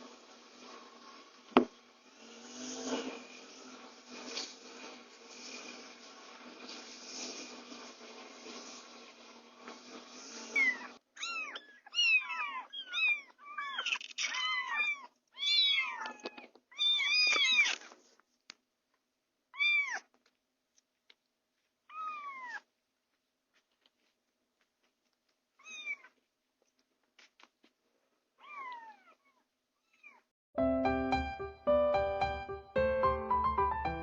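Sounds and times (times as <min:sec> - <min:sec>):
steady hiss: 0:00.0 - 0:11.0.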